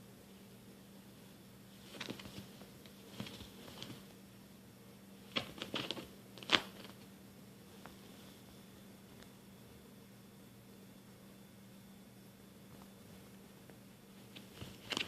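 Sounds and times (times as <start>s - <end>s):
faint steady hum: 0.0s - 15.0s
kitten scratching fabric couch: 1.8s - 4.1s, 5.2s - 7.0s, 14.2s - 15.0s.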